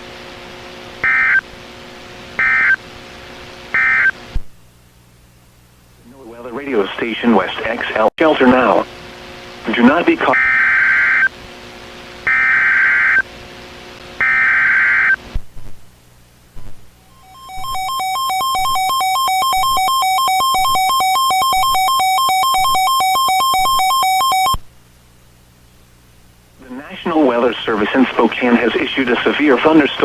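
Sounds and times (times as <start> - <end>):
weather radio warning alert tone: 9.7 - 11.2, 17.1 - 24.6
harsh electronic data bursts: 17.1 - 24.6.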